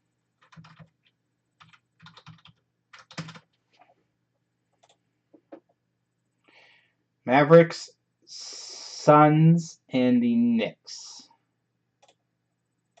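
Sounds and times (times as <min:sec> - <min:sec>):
typing on a keyboard: 0:00.4 - 0:03.6.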